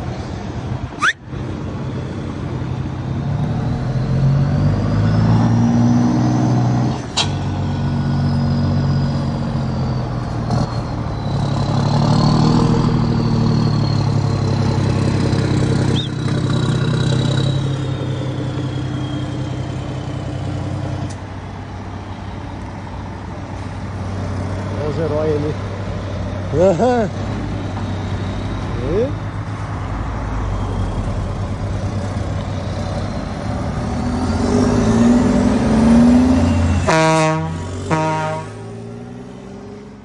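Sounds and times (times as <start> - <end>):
diesel truck engine rumble: 0.0 - 40.0
high thin whistle: 1.0 - 1.2, 15.9 - 16.2.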